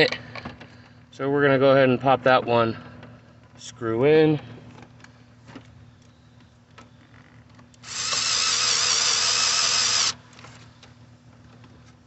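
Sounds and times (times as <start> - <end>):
power drill whirring: 7.8 - 10.2.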